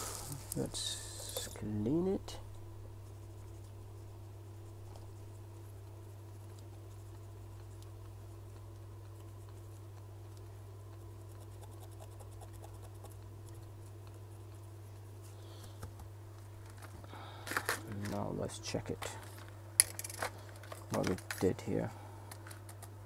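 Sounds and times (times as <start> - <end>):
small brush scratching: 0.0 - 1.8, 2.5 - 15.4
low electrical hum: 0.0 - 23.0.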